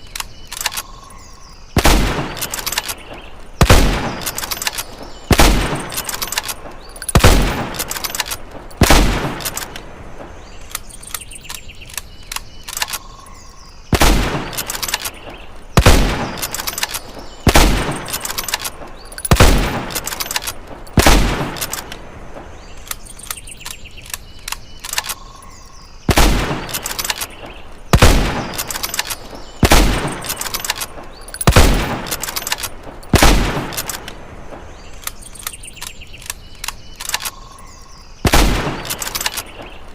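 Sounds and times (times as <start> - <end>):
small clicks: 0.0 - 1.2, 2.3 - 5.1, 5.7 - 9.9, 10.6 - 13.4, 14.5 - 22.1, 22.7 - 25.8, 26.6 - 37.6, 38.3 - 39.9
rifle shots: 1.8 - 9.8, 13.9 - 22.0, 26.1 - 34.2, 38.2 - 39.7.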